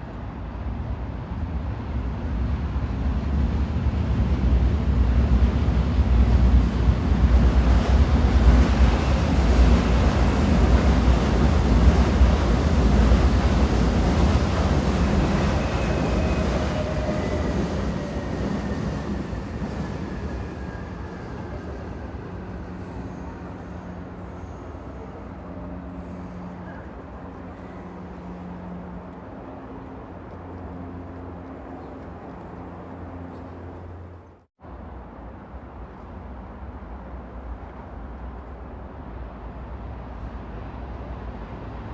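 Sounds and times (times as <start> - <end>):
train rumbling on rails: 0.0 - 41.9
high squeal gliding downward: 15.0 - 25.5.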